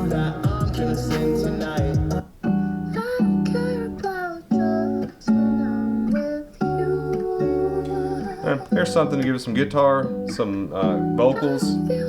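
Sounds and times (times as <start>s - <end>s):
music through a speaker: 0.0s - 2.3s
strummed guitar chords: 0.0s - 12.0s.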